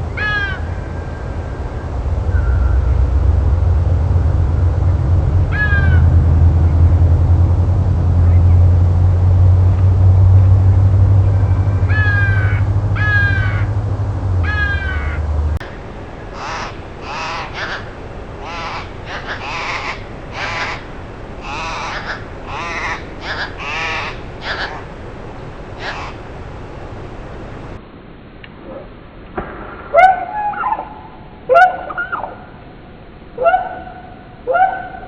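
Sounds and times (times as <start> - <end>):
loud steady low hum: 0.0 - 29.5
bird calls: 10.8 - 13.8, 14.4 - 25.0, 25.7 - 26.3.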